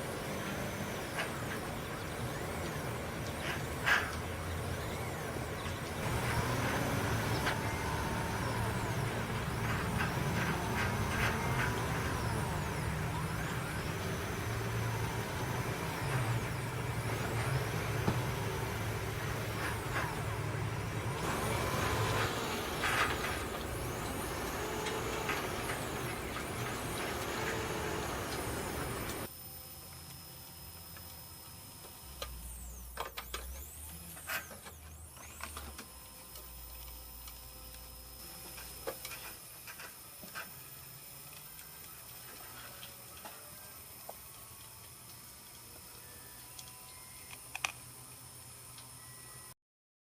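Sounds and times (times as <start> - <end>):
machinery humming: 0.0 - 29.3
faint gliding whines: 0.0 - 49.6.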